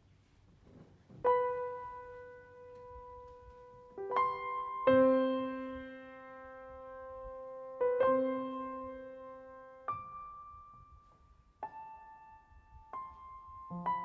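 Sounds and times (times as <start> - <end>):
electric piano notes: 1.2 - 14.0.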